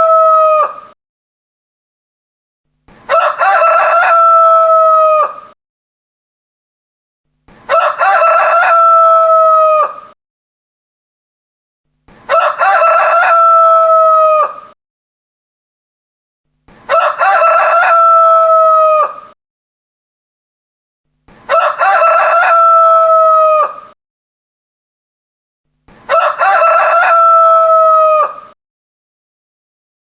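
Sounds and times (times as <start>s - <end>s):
rooster crowing: 0.0s - 0.9s, 3.1s - 5.6s, 7.7s - 10.2s, 12.3s - 14.8s, 16.9s - 19.4s, 21.5s - 24.0s, 26.1s - 28.6s.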